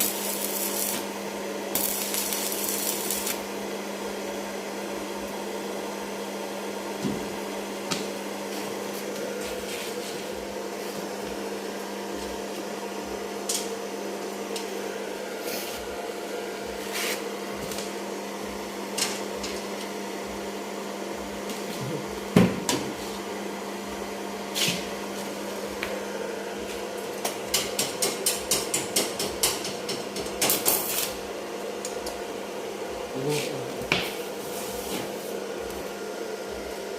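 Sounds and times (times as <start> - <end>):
steady hum: 0.0 - 6.2.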